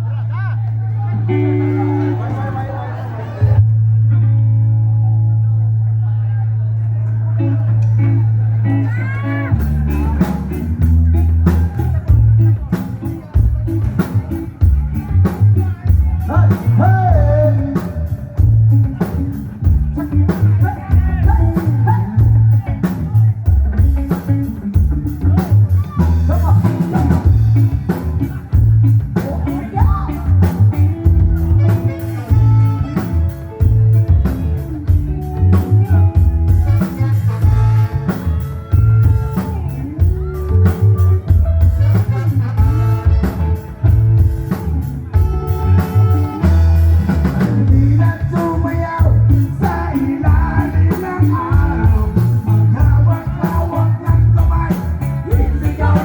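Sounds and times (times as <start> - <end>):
rock band playing: 0.0 - 56.0
drum kit steady beat: 8.8 - 56.0
person singing: 15.6 - 18.6, 45.1 - 56.0.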